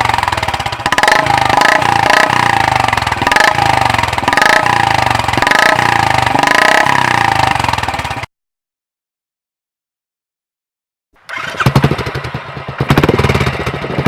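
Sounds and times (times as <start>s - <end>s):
motorcycle engine exhaust beat: 0.0s - 8.3s, 11.7s - 14.0s.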